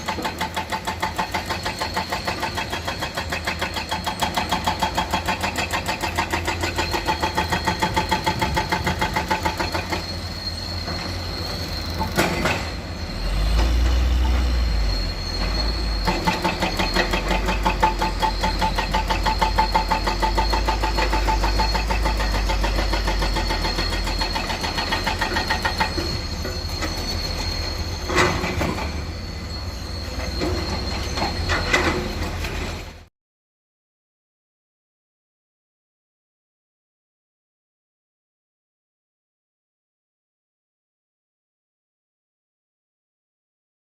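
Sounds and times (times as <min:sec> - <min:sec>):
excavator diesel engine running: 0:00.0 - 0:33.1.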